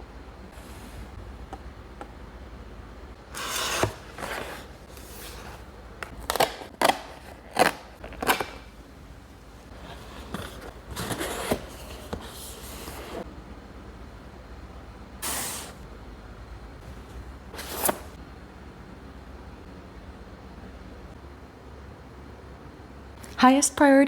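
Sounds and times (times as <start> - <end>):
packaging rustling: 3.4 - 8.8.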